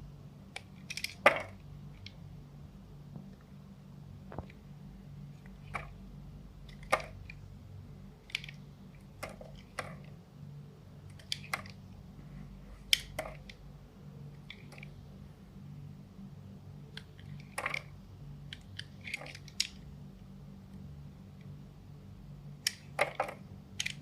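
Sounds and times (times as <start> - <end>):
low steady hum: 0.0 - 24.0.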